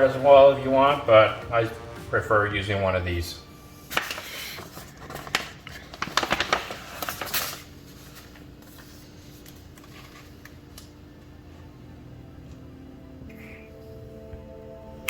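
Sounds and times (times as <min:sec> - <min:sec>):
decal crackling and rustling: 0:03.9 - 0:11.0
faint steady hum: 0:07.0 - 0:15.0.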